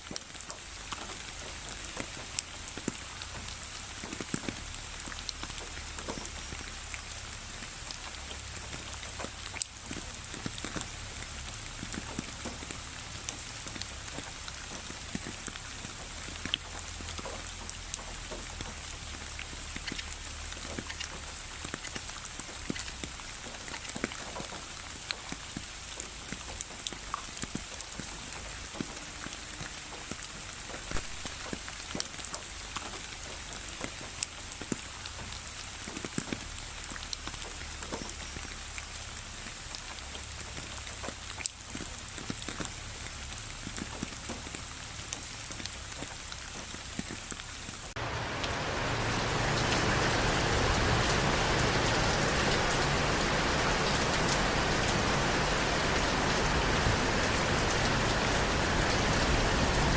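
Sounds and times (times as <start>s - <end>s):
raindrops ticking close by: 0.0s - 59.9s
steady rain hiss: 0.0s - 59.9s.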